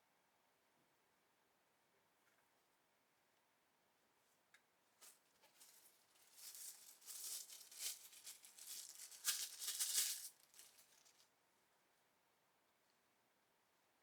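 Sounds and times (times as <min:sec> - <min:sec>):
packaging rustling and rattling: 0:05.5 - 0:11.2.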